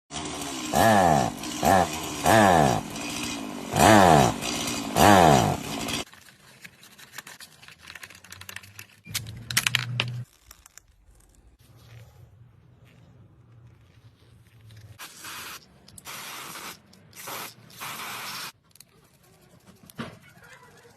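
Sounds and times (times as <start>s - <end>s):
chainsaw pull-start whir: 0.1s - 6.1s.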